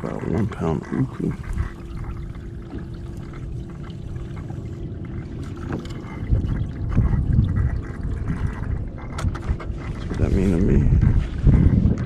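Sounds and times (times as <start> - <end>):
faint steady hum: 0.0 - 9.2
water lapping against kayak hull: 0.0 - 12.0
low rumble: 0.9 - 12.0.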